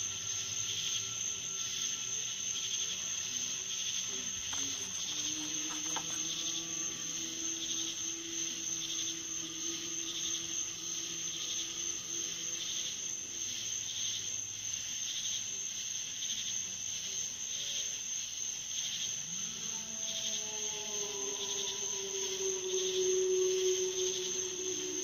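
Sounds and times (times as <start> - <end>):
faint low hum: 0.0 - 15.6
crickets trilling: 0.0 - 25.0
lower insect call pulsing: 0.0 - 25.0.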